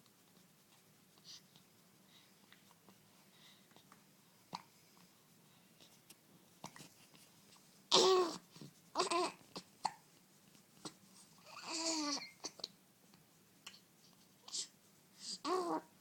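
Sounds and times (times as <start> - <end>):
baby babbling: 7.9 - 8.4, 9.0 - 9.4, 11.5 - 12.7, 15.3 - 15.9.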